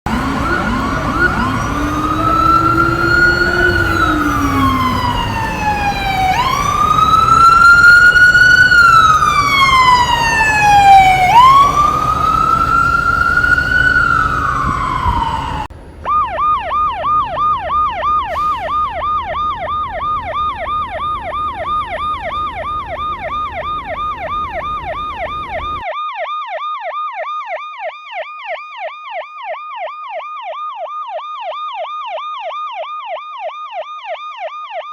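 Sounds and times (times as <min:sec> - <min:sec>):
road noise: 0:00.0 - 0:25.8
ambulance siren: 0:00.0 - 0:34.9.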